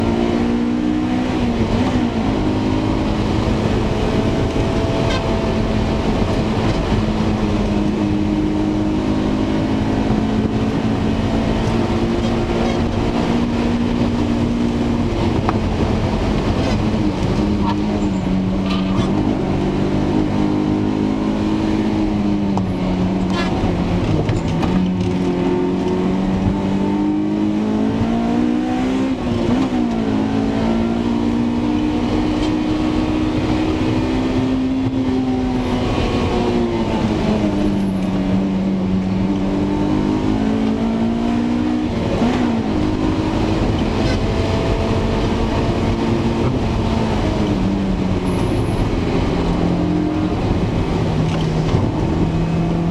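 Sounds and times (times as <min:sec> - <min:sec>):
car engine: 0:00.0 - 0:52.9
tyre and road noise: 0:00.0 - 0:52.9.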